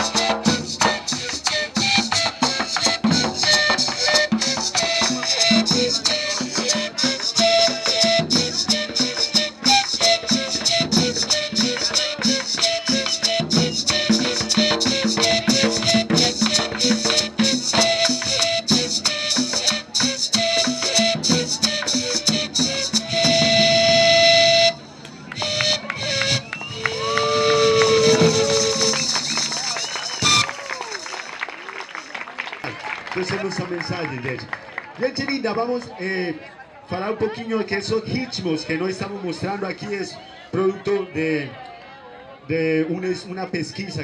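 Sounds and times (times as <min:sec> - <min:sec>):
drums: 0:00.0 - 0:30.6.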